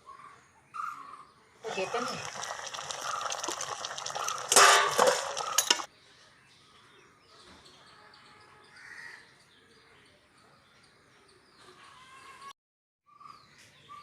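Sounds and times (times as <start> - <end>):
metal utensil scraping in pot: 1.7 - 5.9.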